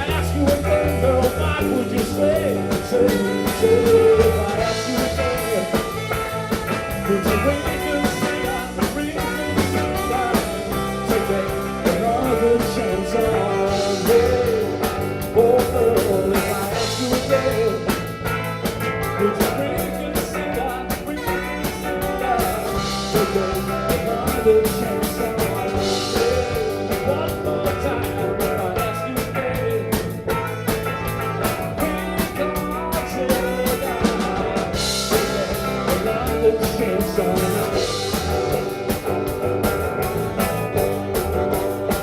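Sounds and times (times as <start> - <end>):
drums keeping steady beat: 0.0 - 42.0
live band playing: 0.0 - 42.0
wavering lead melody: 0.0 - 42.0.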